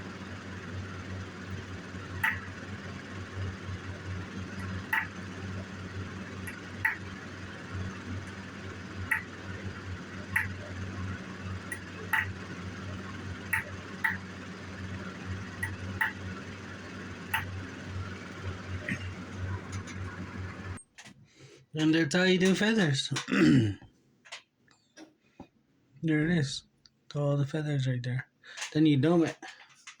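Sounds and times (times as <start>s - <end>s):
steady low hum: 0.0s - 20.8s.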